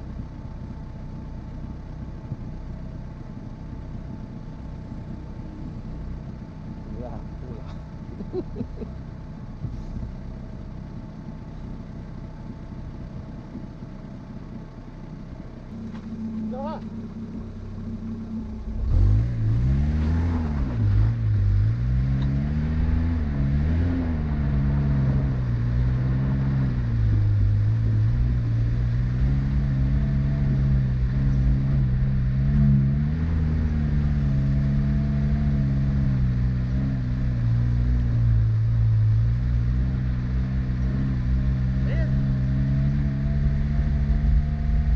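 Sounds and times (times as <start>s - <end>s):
car engine revving: 15.2s - 44.9s.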